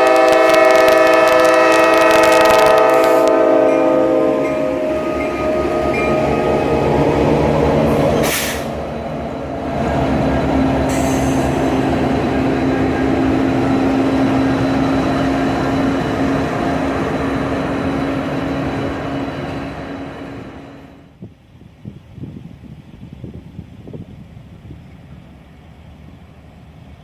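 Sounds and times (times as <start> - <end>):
train horn: 0.0 - 8.8, 9.6 - 16.6
train cars rumbling past: 0.0 - 27.0.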